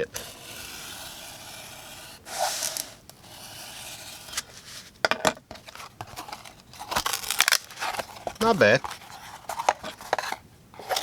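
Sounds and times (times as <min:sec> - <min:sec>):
knife slicing through cardboard: 0:00.0 - 0:04.9
sharp cardboard cracks: 0:06.2 - 0:09.1.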